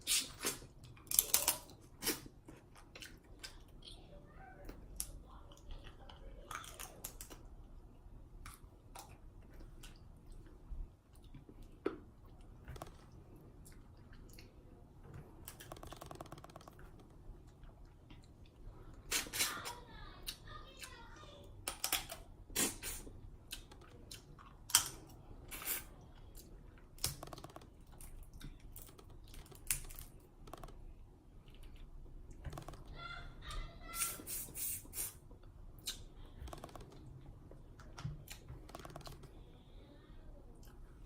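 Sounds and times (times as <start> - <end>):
wet smacking and chewing: 0.1 - 19.5
seafood shells clicking and cracking: 0.4 - 2.2, 21.6 - 22.3, 26.9 - 30.9.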